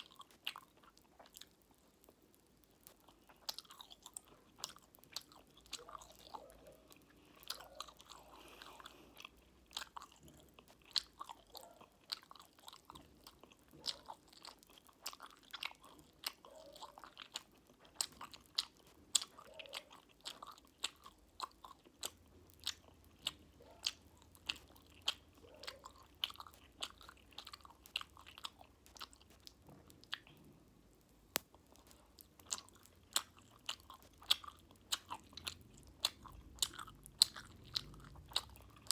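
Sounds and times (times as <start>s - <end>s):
popping candy crackling: 0.0s - 38.9s
wet chewing sounds: 0.0s - 38.9s.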